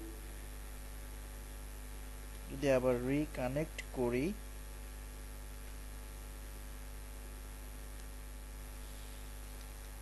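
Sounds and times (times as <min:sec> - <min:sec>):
mains hum: 0:00.0 - 0:10.0.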